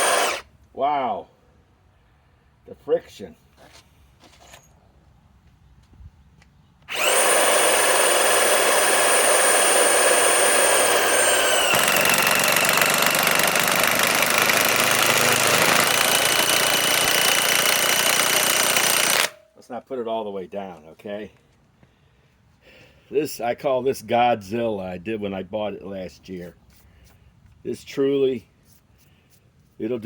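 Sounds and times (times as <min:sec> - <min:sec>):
impact wrench driving bolt into wood: 0:11.3 - 0:19.4.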